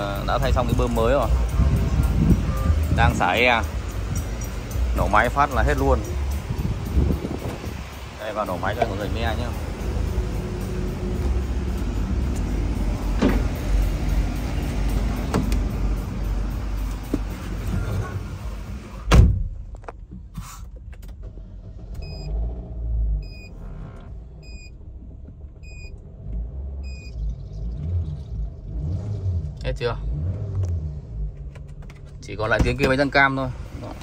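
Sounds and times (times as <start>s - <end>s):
car engine idling: 0.0s - 22.2s
sharp thump: 13.1s - 13.6s, 19.1s - 19.6s.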